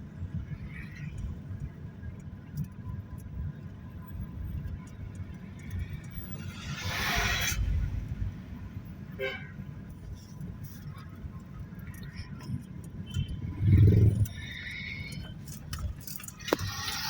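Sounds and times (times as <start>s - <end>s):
road traffic rumble: 0.0s - 17.0s
vehicle passing close by: 13.5s - 14.6s.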